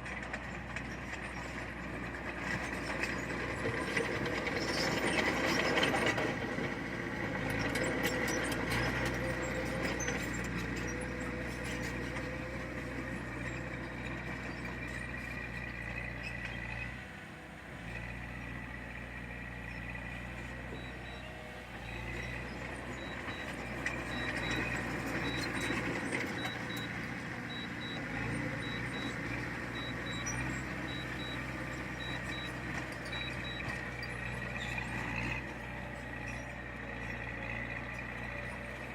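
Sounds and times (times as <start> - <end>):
diesel earthmoving machinery: 0.0 - 38.9
faint regular beeping: 22.0 - 34.8.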